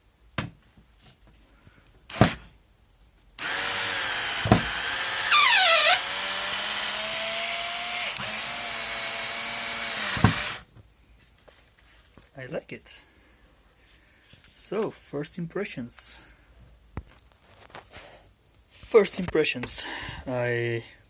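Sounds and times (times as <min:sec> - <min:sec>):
cordless screwdriver motor running: 0:03.4 - 0:10.6.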